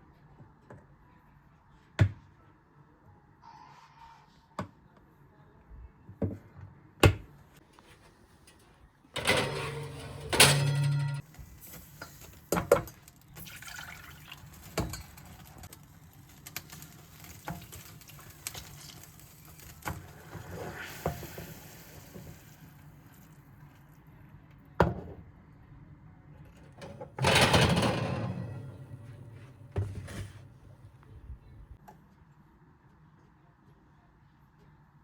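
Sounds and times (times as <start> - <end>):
utensils knocking and clinking: 9.2 - 11.2
liquid pouring: 13.4 - 14.9.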